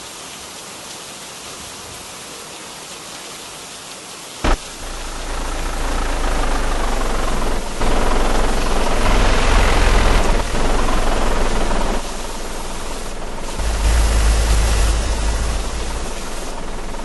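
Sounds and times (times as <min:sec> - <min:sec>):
rain: 0:00.0 - 0:17.0
deep steady rumble: 0:04.5 - 0:17.0
storm wind: 0:07.2 - 0:17.0.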